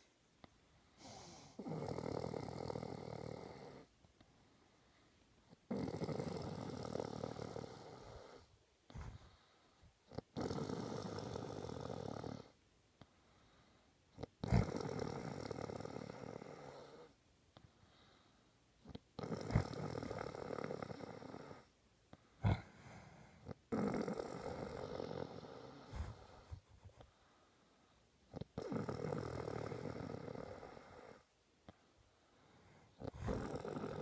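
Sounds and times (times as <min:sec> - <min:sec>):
short sharp snorts: 0:01.0 - 0:01.9, 0:22.4 - 0:23.6
person snoring: 0:01.0 - 0:03.9, 0:05.6 - 0:09.3, 0:10.1 - 0:12.6, 0:14.2 - 0:17.2, 0:18.9 - 0:21.7, 0:22.4 - 0:26.6, 0:28.3 - 0:31.3, 0:32.8 - 0:34.0.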